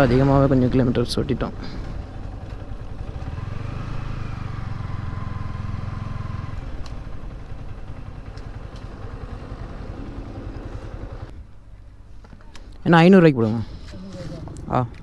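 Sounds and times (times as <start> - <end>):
motorcycle engine running: 0.0 - 11.5.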